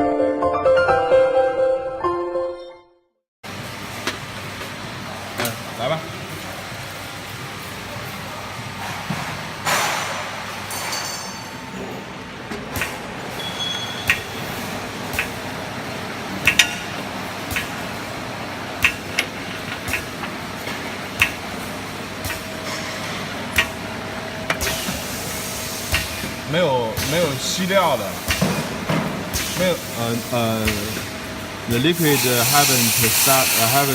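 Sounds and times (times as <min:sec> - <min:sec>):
steady machine hum: 0:11.6 - 0:33.9
machine clicks: 0:12.5 - 0:13.1, 0:14.0 - 0:14.4, 0:15.1 - 0:15.5, 0:16.4 - 0:17.9, 0:18.8 - 0:21.6, 0:22.2 - 0:22.5, 0:23.5 - 0:23.8.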